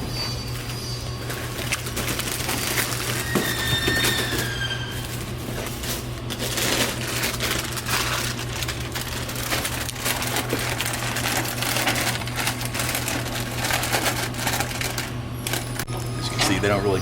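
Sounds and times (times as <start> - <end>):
plastic snack packets crinkling: 1.3 - 16.5
steady low hum: 4.4 - 17.0.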